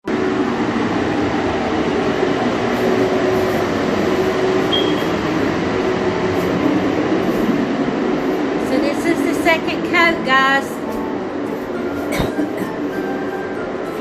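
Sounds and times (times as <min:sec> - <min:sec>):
blower drone: 0:00.0 - 0:14.0.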